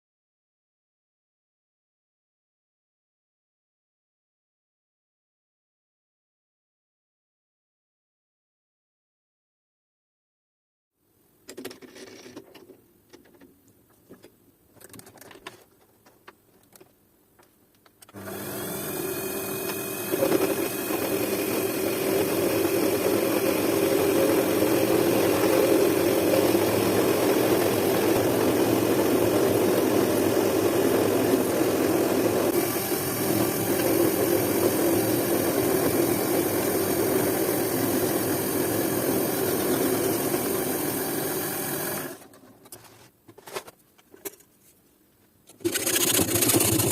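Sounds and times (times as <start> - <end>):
electric power tool running: 18.1 - 42.2, 45.6 - 46.9.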